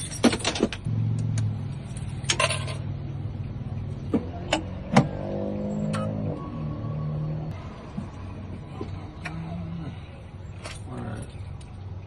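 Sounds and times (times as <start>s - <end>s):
keys and tools rattling: 0.0s - 0.9s.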